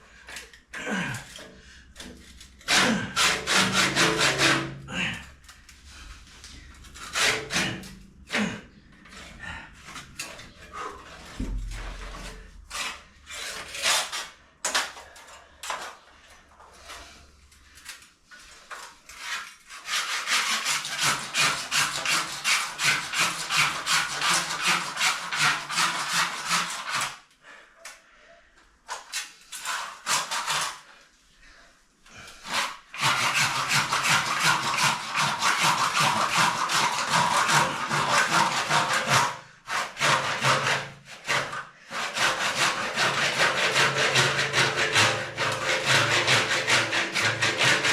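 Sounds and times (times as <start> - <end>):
hand saw cutting pipe: 0.1 - 5.4, 6.1 - 15.0, 17.9 - 27.2, 28.9 - 31.0, 32.1 - 47.9.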